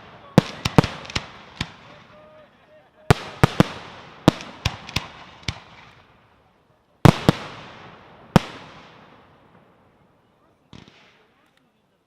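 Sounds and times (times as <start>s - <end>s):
fireworks bangs echoing: 0.0s - 2.4s, 3.1s - 6.3s, 7.0s - 9.9s, 10.7s - 11.3s.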